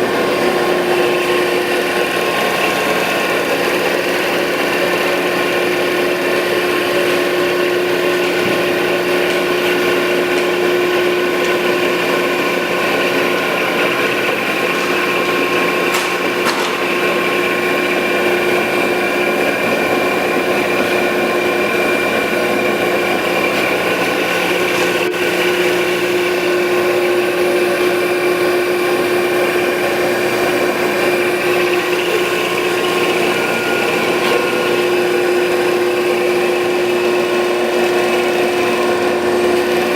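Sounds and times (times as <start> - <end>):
grinder machine hum: 0.0 - 39.9.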